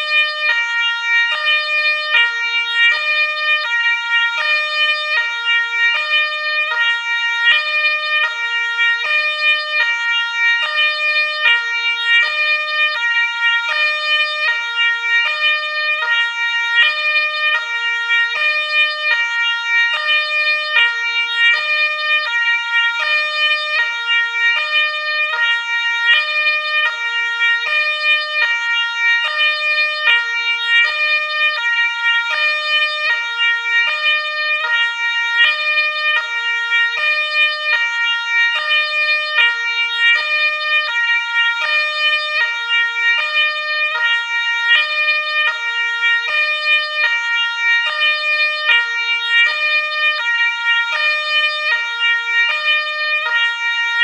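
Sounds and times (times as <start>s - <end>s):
two-tone ambulance siren: 0.0s - 54.0s.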